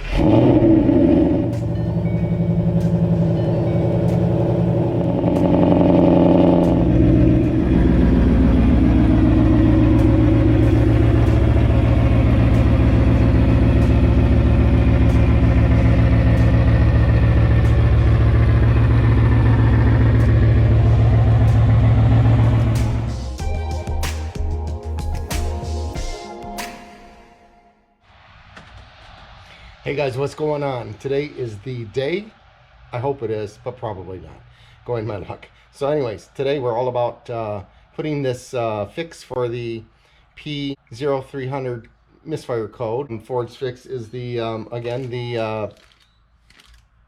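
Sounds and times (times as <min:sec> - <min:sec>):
car engine running: 0:00.0 - 0:23.6.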